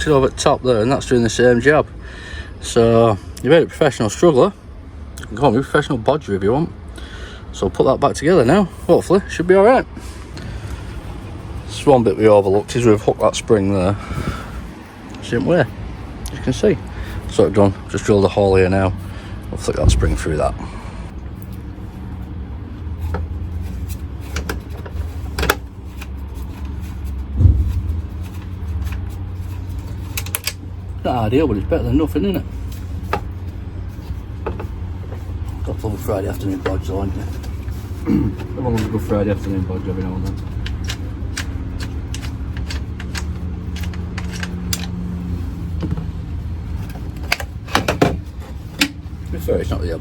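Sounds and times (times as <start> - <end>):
steady low hum: 6.0 - 50.0
low hum: 25.7 - 31.0
metal tools clicking and clinking: 40.3 - 45.0.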